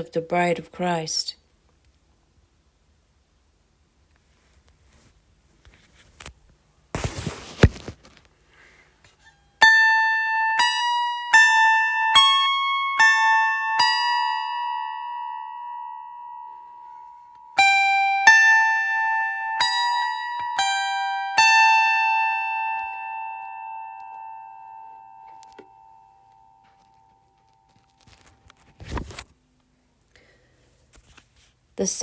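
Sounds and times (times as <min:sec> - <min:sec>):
plucked string instrument notes: 0:09.2 - 0:28.3.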